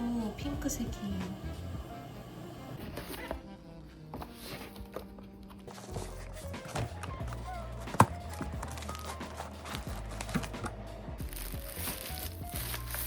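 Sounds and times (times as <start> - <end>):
background music with light melody: 0.0 - 13.0.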